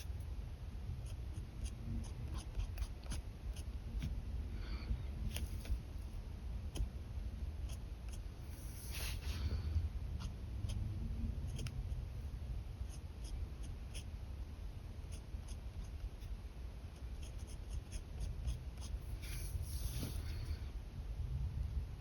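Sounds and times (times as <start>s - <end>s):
low steady rumble: 0.0s - 22.0s
pen scratching on paper: 1.0s - 4.1s, 7.6s - 9.2s, 11.5s - 12.0s, 12.9s - 14.1s, 15.1s - 16.3s, 16.9s - 20.2s.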